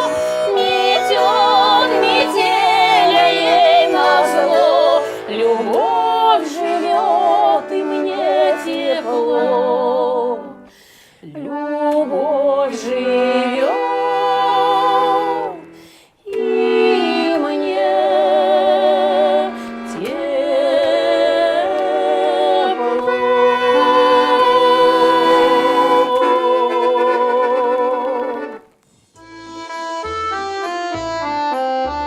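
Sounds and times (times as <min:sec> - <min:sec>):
button accordion quick notes: 0:00.0 - 0:09.8, 0:18.6 - 0:32.0
two women singing: 0:00.0 - 0:28.6.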